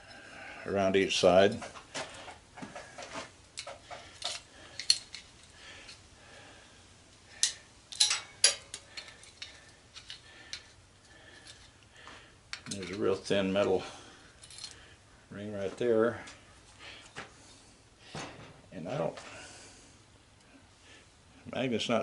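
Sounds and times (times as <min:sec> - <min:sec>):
metal parts and tools clinking: 0:03.0 - 0:06.0, 0:07.4 - 0:10.8, 0:12.5 - 0:13.3, 0:14.3 - 0:14.8.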